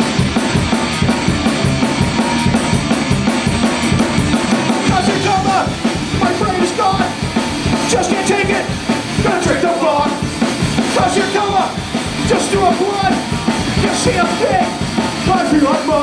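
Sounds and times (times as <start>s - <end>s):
fast cymbal pattern: 0.0s - 16.0s
rock band playing: 0.0s - 16.0s
person singing: 4.9s - 10.2s, 10.9s - 16.0s.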